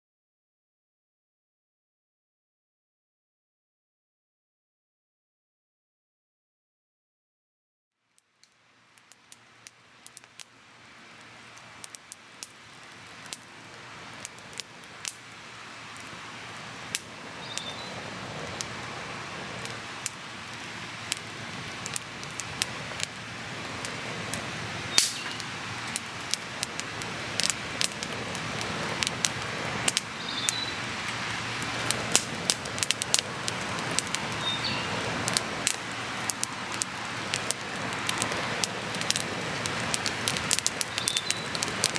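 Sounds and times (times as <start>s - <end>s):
campfire crackling and popping: 8.2s - 41.9s.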